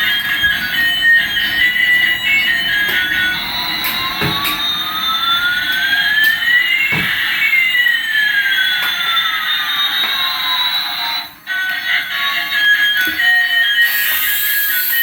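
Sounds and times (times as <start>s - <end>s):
electronic jet engine rush: 0.0s - 9.7s.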